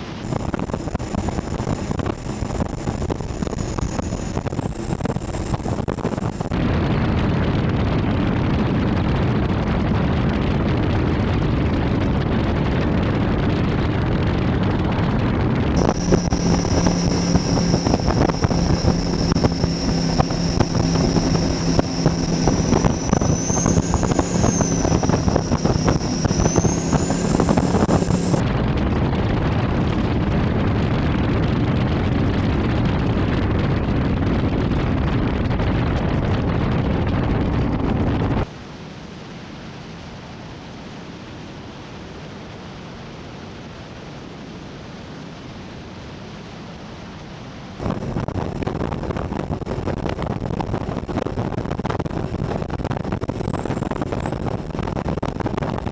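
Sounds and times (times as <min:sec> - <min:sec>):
high whine: 0:00.0 - 0:10.0, 0:14.1 - 0:34.2, 0:47.8 - 0:55.9
powerboat engine: 0:00.0 - 0:38.5, 0:47.8 - 0:55.9
wind buffeting microphone: 0:00.0 - 0:38.5, 0:47.8 - 0:55.9
rushing water: 0:14.8 - 0:32.4, 0:38.4 - 0:49.4.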